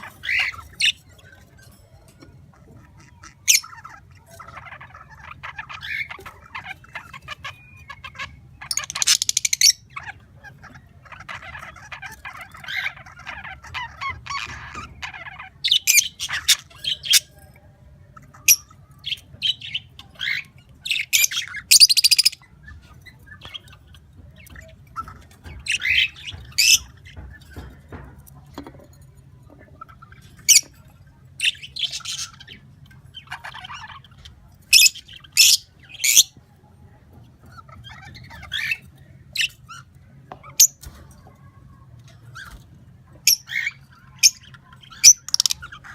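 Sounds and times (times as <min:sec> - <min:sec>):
birds squawking: 0:00.0 - 0:01.8, 0:02.4 - 0:17.4, 0:18.0 - 0:28.4, 0:29.6 - 0:36.4, 0:37.4 - 0:41.4, 0:42.2 - 0:45.9
birds chattering: 0:00.0 - 0:45.9.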